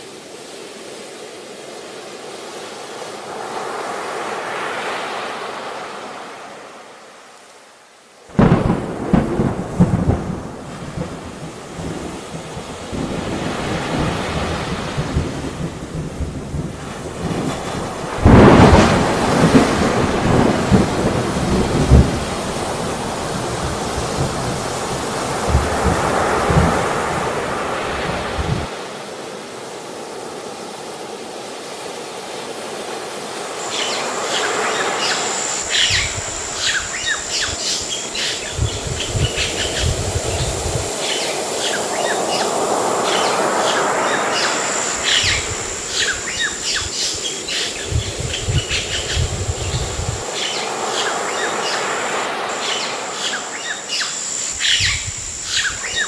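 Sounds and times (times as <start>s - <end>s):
high insect whine: 0.0s - 56.0s
ocean surf washing in: 0.0s - 56.0s
rapid bird chirps: 33.6s - 56.0s.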